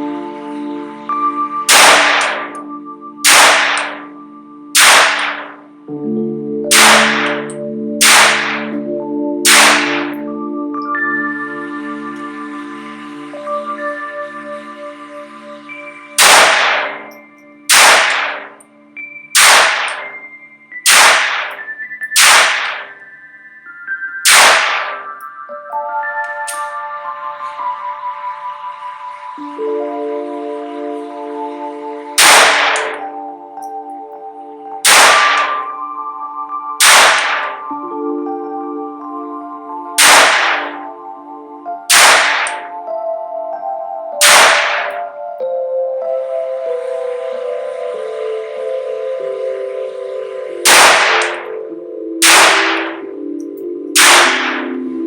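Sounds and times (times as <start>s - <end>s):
soft ambient music: 0.0s - 55.0s
pistol shots with echo: 1.7s - 2.6s, 3.2s - 4.1s, 4.8s - 5.6s, 6.7s - 8.8s, 9.4s - 10.2s, 16.2s - 18.6s, 19.4s - 23.0s, 24.2s - 25.2s, 32.2s - 33.0s, 34.8s - 35.7s, 36.8s - 37.7s, 40.0s - 40.8s, 41.9s - 42.7s, 44.2s - 45.0s, 50.6s - 51.5s, 52.2s - 53.1s, 54.0s - 54.8s.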